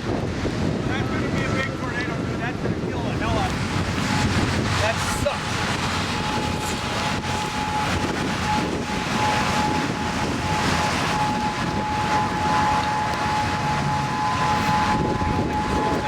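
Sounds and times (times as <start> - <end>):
vehicle road and wind noise: 0.0 - 16.0
steady high-pitched tone: 4.1 - 16.0.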